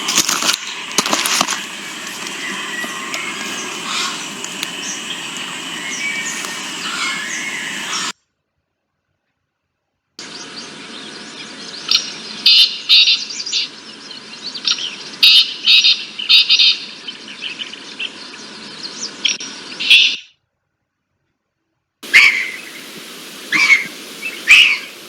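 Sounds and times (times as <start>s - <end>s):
background hiss: 0.0s - 8.2s, 22.0s - 25.0s
bird chirping: 0.0s - 8.2s, 10.2s - 20.3s, 22.0s - 25.0s.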